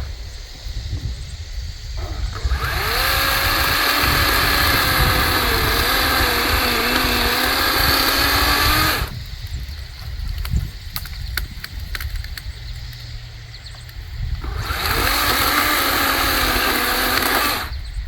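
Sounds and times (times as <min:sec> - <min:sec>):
electric chainsaw cutting branch: 0:02.1 - 0:09.3, 0:14.4 - 0:17.8.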